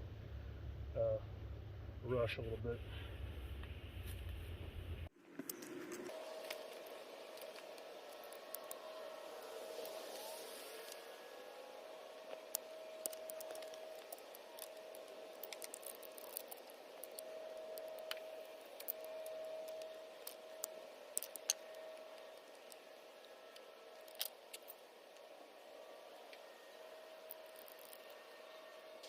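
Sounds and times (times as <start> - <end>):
faint steady hum: 0.0 - 29.0
hand tool clicks and snips: 12.4 - 22.8, 23.5 - 25.2.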